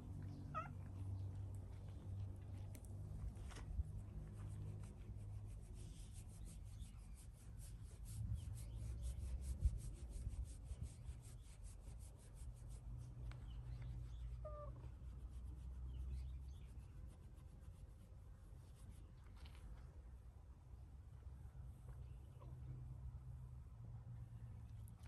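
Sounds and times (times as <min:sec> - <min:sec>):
low steady rumble: 0:00.0 - 0:25.0
hand scratching cat fur: 0:02.5 - 0:19.9.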